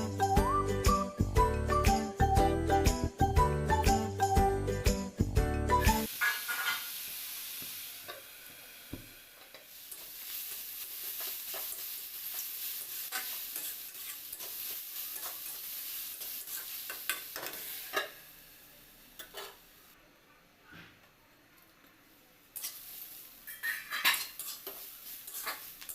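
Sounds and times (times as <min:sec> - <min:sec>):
food sizzling in oil: 0:05.7 - 0:20.0, 0:22.5 - 0:25.9
spatula scraping pan: 0:11.1 - 0:18.2, 0:23.5 - 0:25.9.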